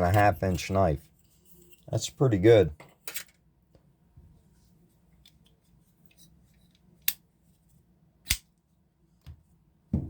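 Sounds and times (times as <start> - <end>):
folding knife handling rustles: 0.0 - 2.0, 5.1 - 7.2.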